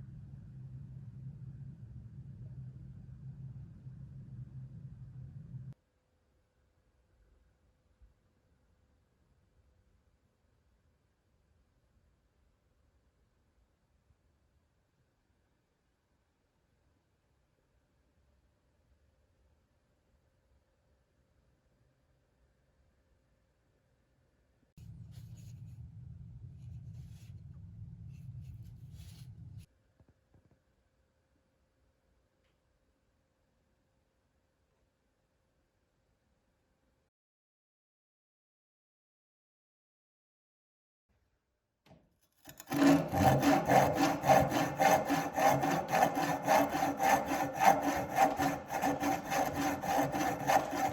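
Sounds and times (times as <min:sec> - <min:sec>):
low rumble: 0:24.8 - 0:29.7
saw cutting wood: 0:42.4 - 0:50.9.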